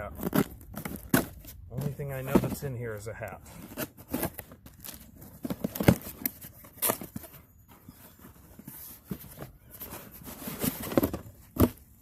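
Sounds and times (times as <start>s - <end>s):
packaging rustling and tearing: 0.0s - 2.6s, 3.6s - 7.4s.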